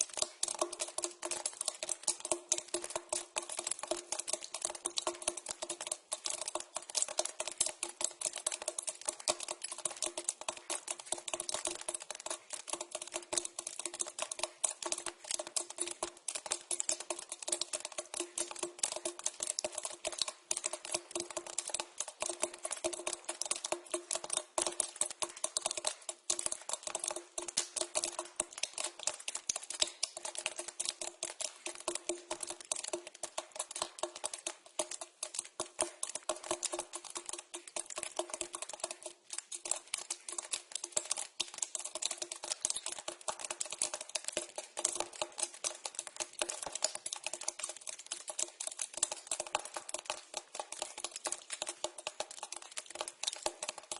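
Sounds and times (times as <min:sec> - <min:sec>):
water dripping into a pipe: 0:00.0 - 0:53.9.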